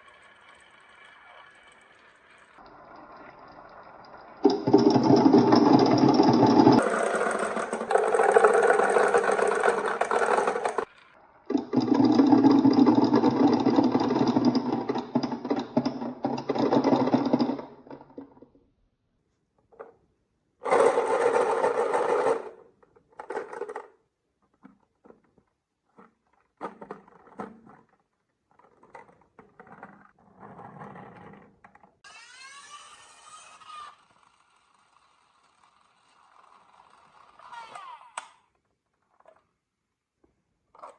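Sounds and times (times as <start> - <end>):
marbles rolling rumble: 0.0 - 10.9, 11.5 - 18.5, 20.6 - 24.0
marbles clicking on track: 4.4 - 10.9, 11.5 - 18.4.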